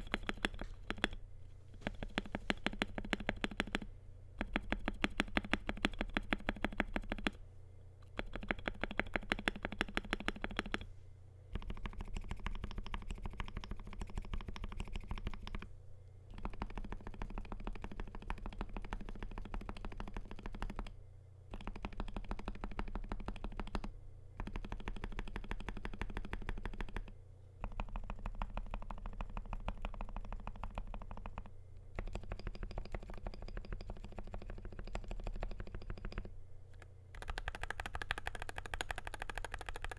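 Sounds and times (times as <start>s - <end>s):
keyboard keystroke clacks: 0.0s - 1.2s, 1.8s - 7.4s, 8.0s - 10.8s, 21.5s - 39.9s.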